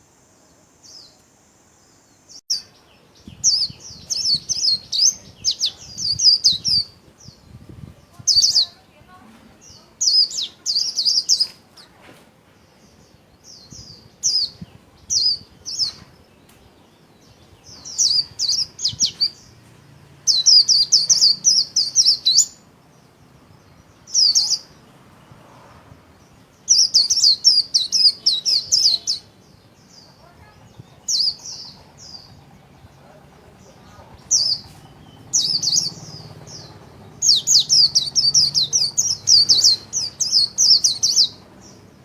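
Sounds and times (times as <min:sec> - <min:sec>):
bird warbling high-pitched song: 0:02.5 - 0:08.8, 0:13.6 - 0:16.2, 0:17.3 - 0:19.5, 0:20.3 - 0:22.7, 0:24.1 - 0:24.7, 0:26.7 - 0:29.4, 0:30.0 - 0:32.9, 0:33.9 - 0:41.9.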